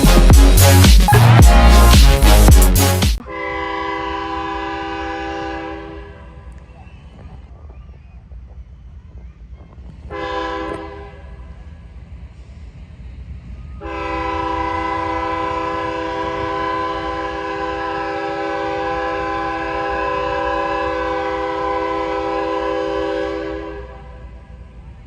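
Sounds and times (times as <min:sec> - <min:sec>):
locomotive air horn chord: 0:00.0 - 0:06.5, 0:10.1 - 0:11.4, 0:13.8 - 0:24.4.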